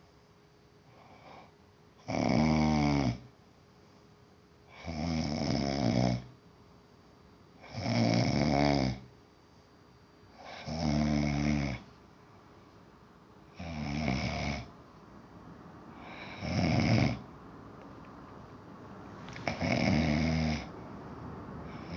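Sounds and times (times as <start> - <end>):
person snoring: 13.5 - 14.7, 15.9 - 17.3, 19.3 - 20.7.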